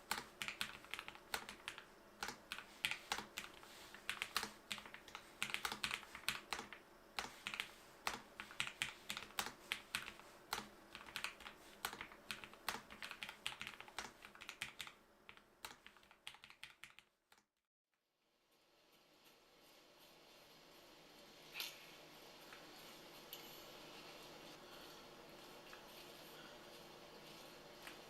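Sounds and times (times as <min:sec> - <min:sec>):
mechanical keyboard typing: 0:00.0 - 0:17.1.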